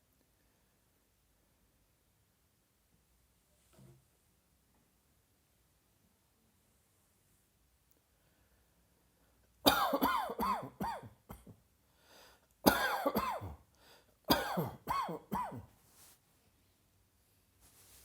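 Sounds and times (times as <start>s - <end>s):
person coughing: 9.7s - 11.6s, 12.7s - 13.6s, 14.3s - 15.7s.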